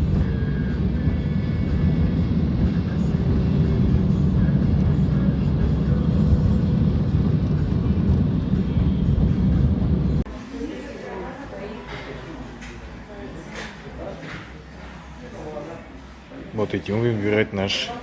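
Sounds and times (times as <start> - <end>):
car driving rumble: 0.0 - 10.2.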